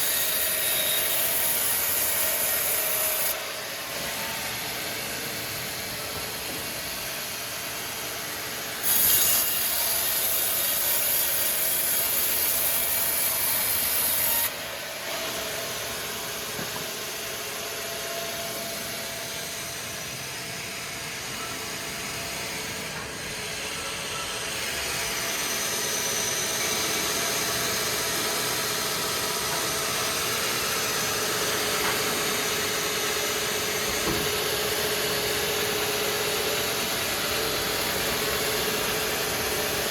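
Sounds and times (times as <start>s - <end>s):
harsh high hiss: 0.0s - 14.6s
mechanical hum: 0.0s - 39.9s
saw cutting timber: 0.0s - 39.9s
sawmill machinery running: 0.0s - 39.9s.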